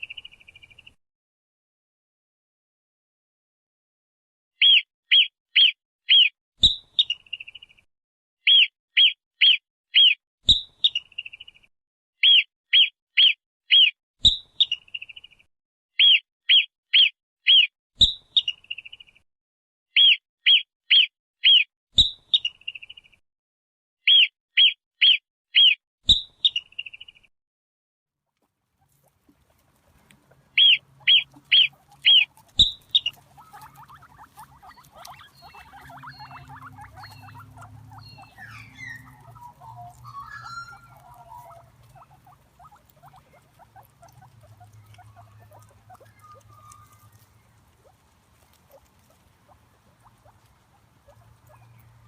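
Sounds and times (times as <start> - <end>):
marmot alarm calls: 4.6 - 7.4, 8.5 - 10.2, 12.2 - 13.9, 16.0 - 17.7, 20.0 - 21.6, 24.1 - 25.8, 30.4 - 52.0.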